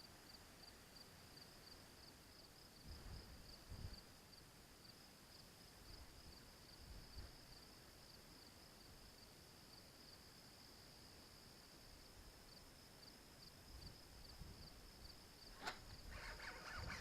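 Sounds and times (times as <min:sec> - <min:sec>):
insects trilling: 0:12.5 - 0:17.0.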